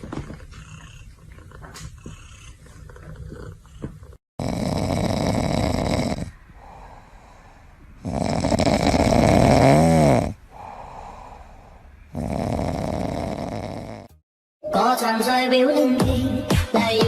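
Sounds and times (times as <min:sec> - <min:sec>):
cat snoring: 0:00.2 - 0:14.2.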